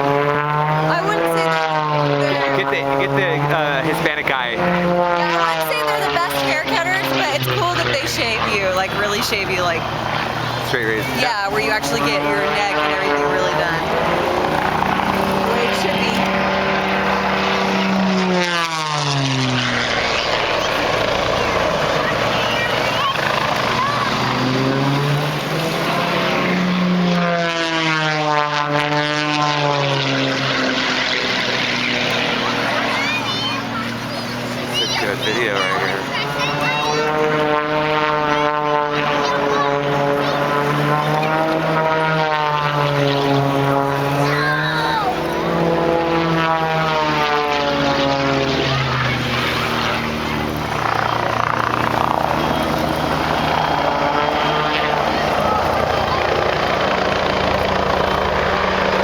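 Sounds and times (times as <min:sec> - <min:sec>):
propeller plane flying past: 0:00.0 - 0:59.0.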